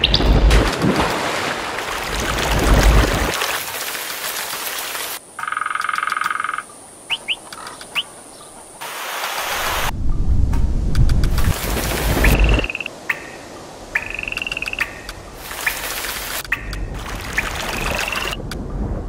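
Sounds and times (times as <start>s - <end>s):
rushing water: 0.0s - 5.4s, 7.9s - 9.9s, 11.3s - 18.6s
frog croaking: 5.4s - 8.1s, 12.3s - 15.2s, 16.4s - 18.4s
bird chirps: 5.4s - 8.6s.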